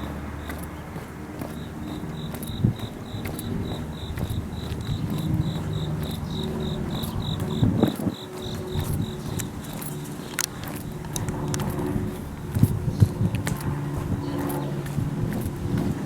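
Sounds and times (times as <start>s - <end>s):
passing traffic rumble: 0.0s - 16.0s
cricket chirping: 1.4s - 10.5s.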